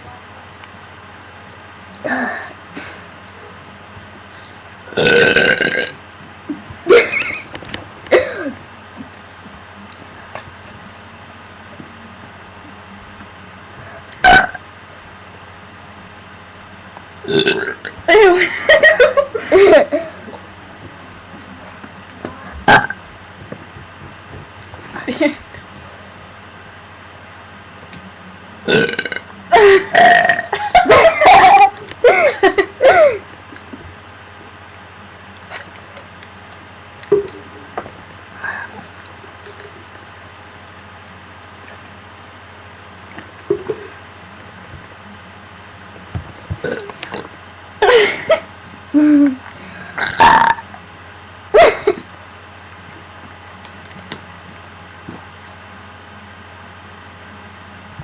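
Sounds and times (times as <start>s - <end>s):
person burping: 4.9s - 6.0s, 14.2s - 14.6s, 17.2s - 18.0s, 22.6s - 23.0s, 28.7s - 30.6s, 46.6s - 47.3s, 50.0s - 50.7s.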